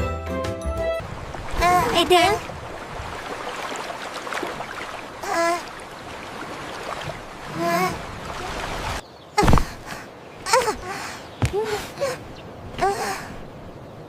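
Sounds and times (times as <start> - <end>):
rushing floodwater: 1.0 - 14.0.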